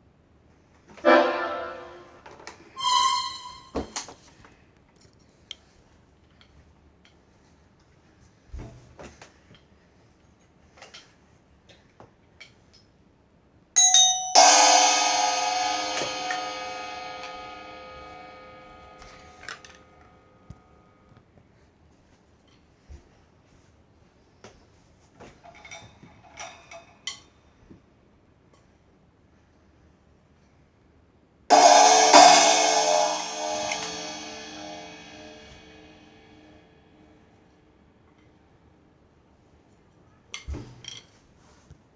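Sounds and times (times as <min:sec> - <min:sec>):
cymbal crash: 0:01.1 - 0:02.2, 0:02.8 - 0:03.7, 0:14.2 - 0:19.5, 0:31.5 - 0:36.0
cymbal tap: 0:14.2 - 0:19.5, 0:31.5 - 0:35.9.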